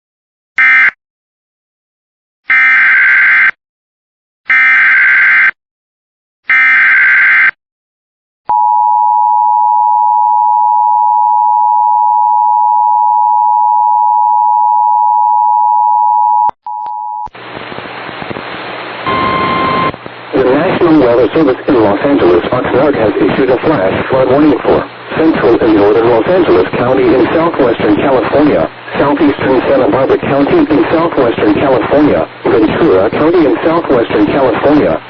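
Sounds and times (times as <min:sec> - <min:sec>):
two-tone alarm: 0:00.6 - 0:01.0, 0:02.5 - 0:03.6, 0:04.5 - 0:05.6, 0:06.5 - 0:07.6, 0:19.1 - 0:19.9.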